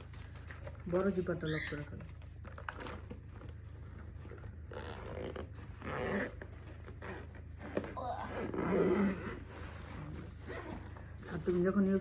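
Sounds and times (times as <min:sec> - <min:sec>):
zipper being pulled shut: 0:04.5 - 0:11.6.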